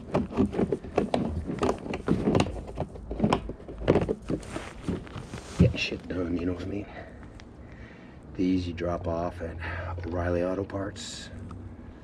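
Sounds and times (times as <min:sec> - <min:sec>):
objects being handled: 0:00.0 - 0:07.5.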